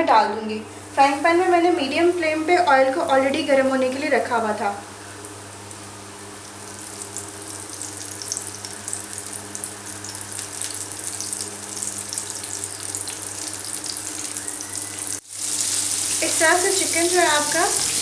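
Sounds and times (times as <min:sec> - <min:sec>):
chicken sizzling in hot oil: 0:04.8 - 0:18.0.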